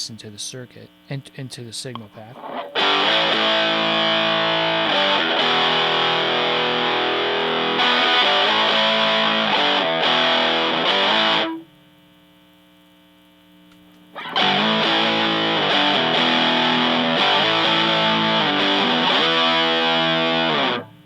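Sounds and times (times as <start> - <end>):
distorted electric guitar chords: 2.0 - 11.7, 14.1 - 21.0.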